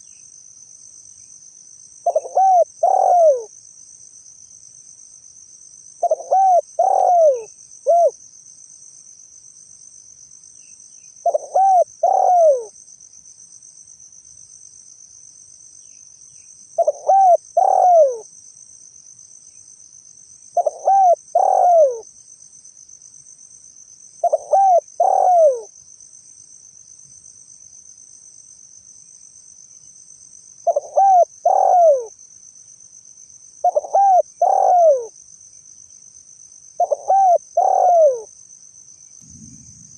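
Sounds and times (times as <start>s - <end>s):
dove cooing: 2.0s - 3.5s, 6.0s - 8.2s, 11.2s - 12.7s, 16.8s - 18.2s, 20.6s - 22.0s, 24.2s - 25.7s, 30.6s - 32.1s, 33.6s - 35.1s, 36.8s - 38.3s.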